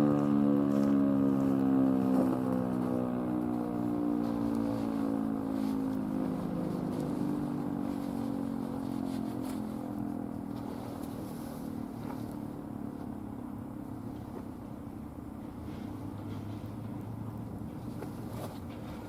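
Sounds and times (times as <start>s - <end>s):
outdoor warning siren winding down: 0.0s - 13.4s.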